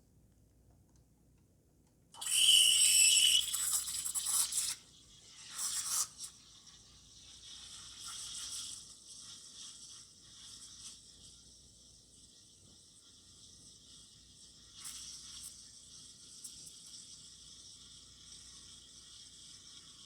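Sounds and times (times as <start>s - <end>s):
high whistling tones: 2.2s - 3.6s
steam wand hissing in milk: 2.2s - 20.0s.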